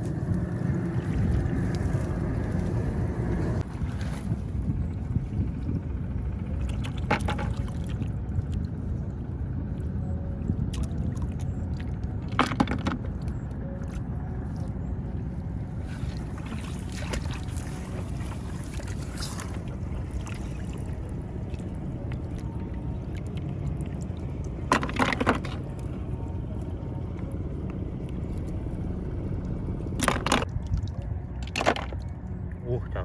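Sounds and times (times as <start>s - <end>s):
splashing in shallow water: 0.0s - 5.2s, 15.6s - 26.7s
low rumble: 0.0s - 33.0s.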